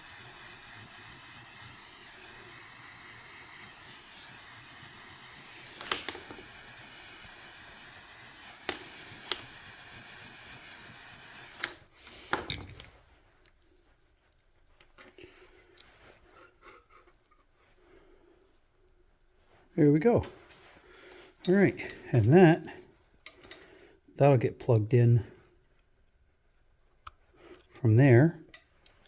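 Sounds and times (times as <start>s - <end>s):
small electric device whining: 0.0s - 11.9s.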